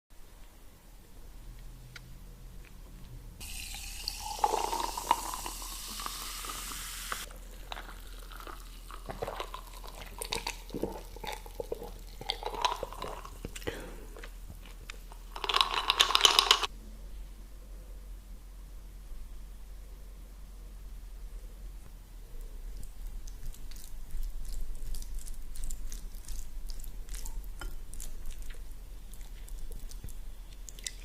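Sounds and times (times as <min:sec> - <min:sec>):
water running from tap: 0:03.4 - 0:07.2.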